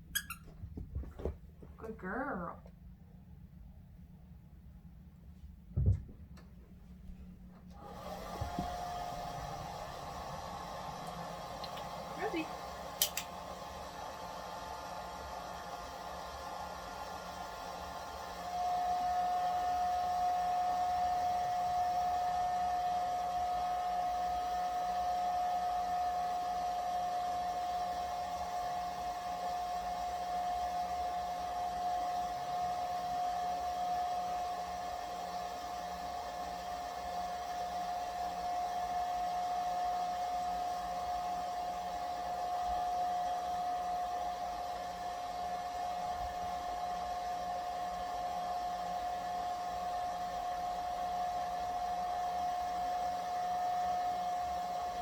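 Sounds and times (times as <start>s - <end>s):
hair dryer running: 7.7s - 55.0s.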